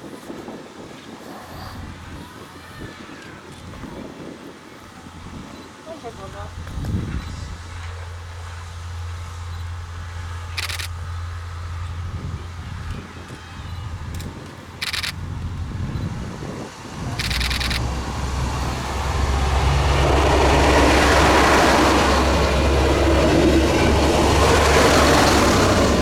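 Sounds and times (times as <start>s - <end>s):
train passing: 4.8s - 26.0s
short sharp bursts: 8.6s - 11.8s, 14.1s - 15.2s, 16.9s - 26.0s.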